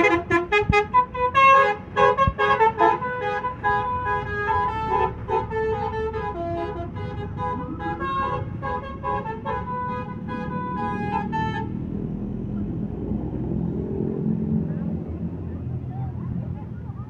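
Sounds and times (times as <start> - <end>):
multi-tone bus horn tune: 0.0 - 12.2
low vehicle rumble: 0.0 - 17.0.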